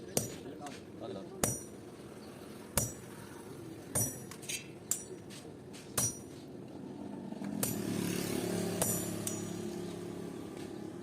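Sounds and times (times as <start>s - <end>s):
hammer striking steel on anvil: 0.1s - 0.4s, 1.4s - 1.8s, 2.8s - 3.1s, 3.9s - 5.2s, 5.9s - 6.4s, 7.6s - 7.9s, 8.8s - 9.6s.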